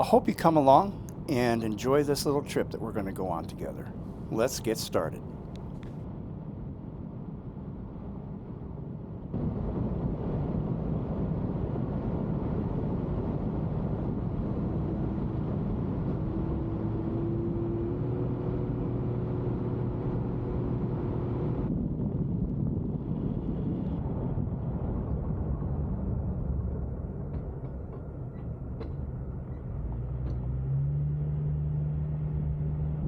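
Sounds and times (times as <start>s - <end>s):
car engine and road rumble: 0.0s - 6.0s, 13.2s - 21.7s, 26.4s - 33.0s.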